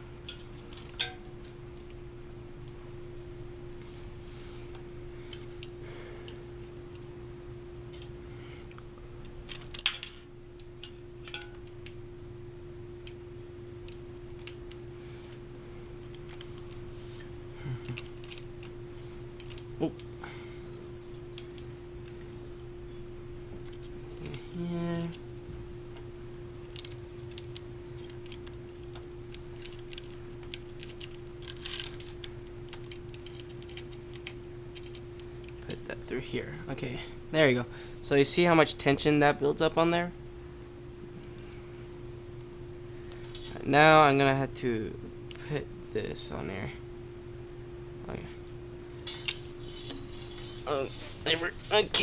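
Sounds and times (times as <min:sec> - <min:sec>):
steady low hum: 0:00.0 - 0:52.0
tools and bike parts clicking: 0:00.3 - 0:01.3, 0:10.8 - 0:11.7, 0:17.9 - 0:18.7, 0:19.4 - 0:19.7, 0:26.7 - 0:28.6, 0:29.3 - 0:35.7.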